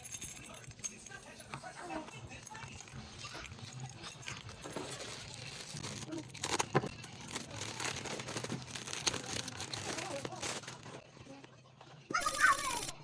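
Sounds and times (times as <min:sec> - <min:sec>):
packaging crinkling: 0:04.7 - 0:11.0.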